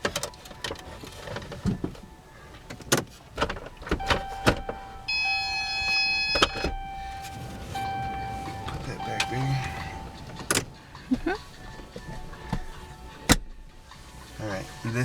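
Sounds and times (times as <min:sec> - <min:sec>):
high electronic tone: 0:04.0 - 0:10.7.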